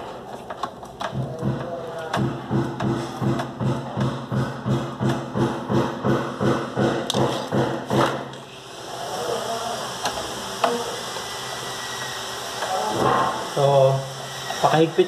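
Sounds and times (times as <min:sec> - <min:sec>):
rhythmic thuds: 0:01.1 - 0:08.2.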